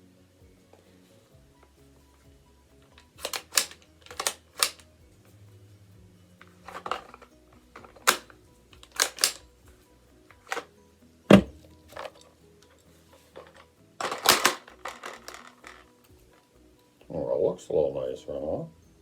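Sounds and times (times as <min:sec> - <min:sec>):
metallic clicks of rifle handling: 0:02.9 - 0:04.9, 0:06.4 - 0:09.5, 0:10.3 - 0:10.7, 0:13.4 - 0:15.9
heavy thud: 0:11.3 - 0:11.7.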